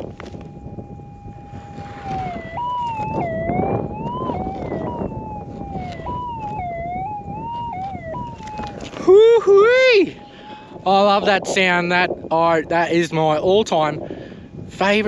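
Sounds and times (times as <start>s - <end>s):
metal detector warbling tone: 0.0s - 8.8s.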